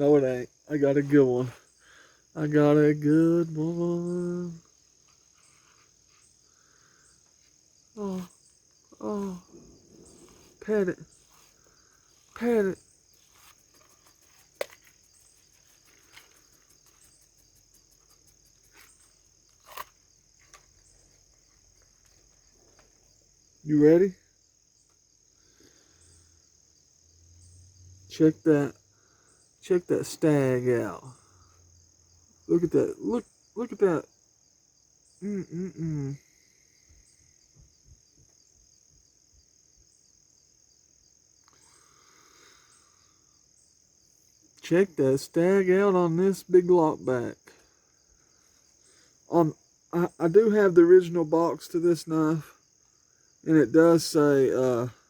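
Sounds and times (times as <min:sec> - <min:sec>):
crickets trilling: 0:00.0 - 0:55.0
soft rustle: 0:04.7 - 0:23.3.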